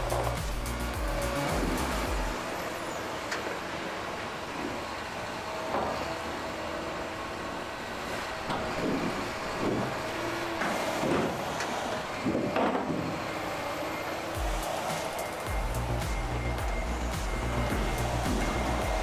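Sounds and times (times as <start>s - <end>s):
heavy machinery droning: 0.0s - 19.0s
machinery clunks: 14.4s - 19.0s.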